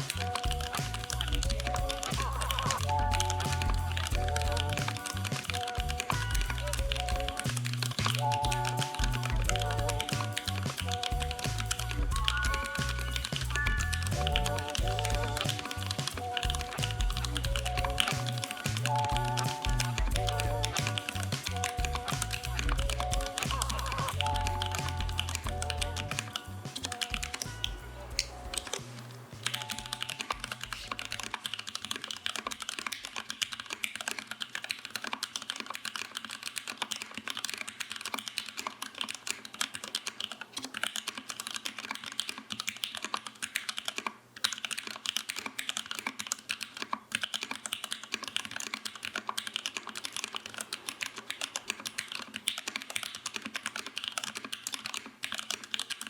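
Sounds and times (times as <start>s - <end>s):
mechanical keyboard typing: 0.0s - 28.8s, 29.4s - 56.0s
background music: 0.0s - 31.5s.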